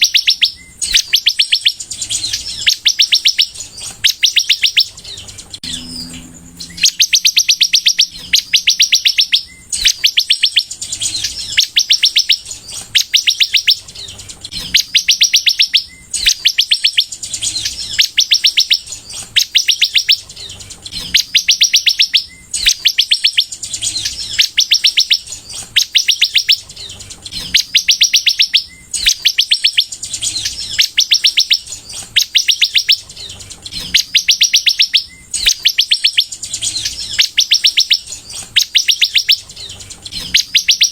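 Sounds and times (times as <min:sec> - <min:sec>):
sunbird high-pitched trills: 0:00.0 - 0:40.9.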